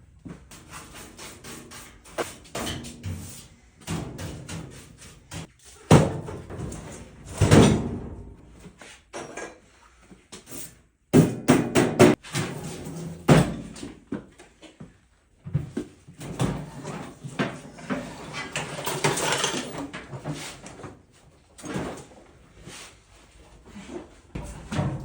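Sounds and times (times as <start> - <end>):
knocks and clanks of handled objects: 15.5 - 20.4.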